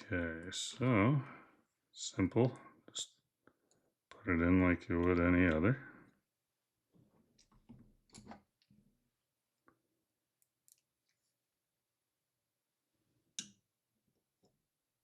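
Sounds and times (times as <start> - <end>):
faint clicks and taps: 4.9 - 5.7.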